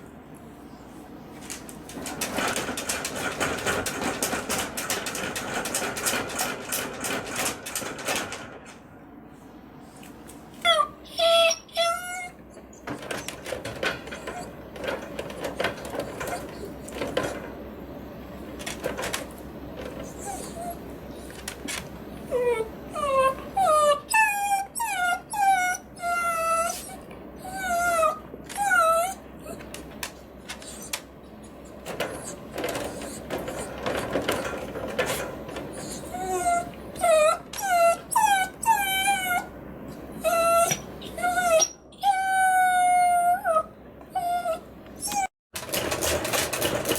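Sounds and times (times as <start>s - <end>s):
cage rattling and clicking: 1.4s - 8.8s, 12.0s - 23.8s, 27.5s - 39.5s, 45.0s - 46.9s
dog whining: 10.6s - 17.5s, 18.8s - 45.4s.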